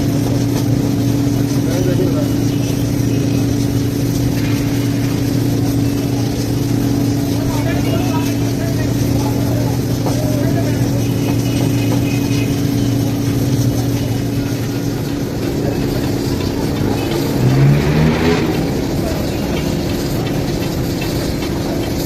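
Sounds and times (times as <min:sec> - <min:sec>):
road noise: 0:00.0 - 0:22.0
vehicle engine humming: 0:00.0 - 0:22.0
engine revving up: 0:12.6 - 0:22.0.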